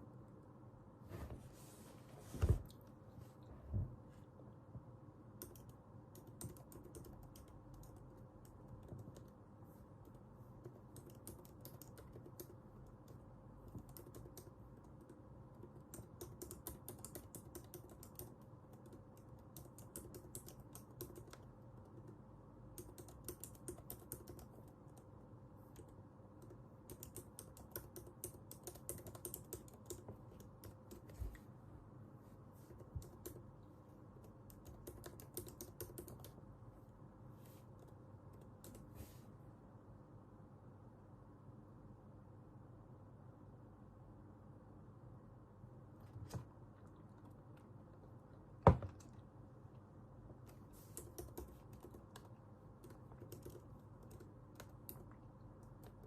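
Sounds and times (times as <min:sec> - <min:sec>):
typing on computer keyboard: 0:05.4 - 0:09.4, 0:10.0 - 0:31.2, 0:32.7 - 0:33.5, 0:34.2 - 0:36.4, 0:50.5 - 0:56.0.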